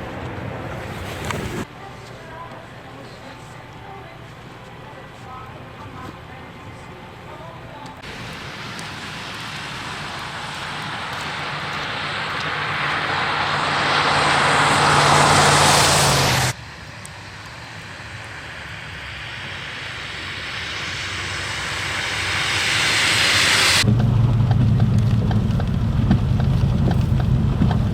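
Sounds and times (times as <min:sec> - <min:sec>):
vehicle engine and tyre noise: 0:00.0 - 0:01.7, 0:08.0 - 0:27.9.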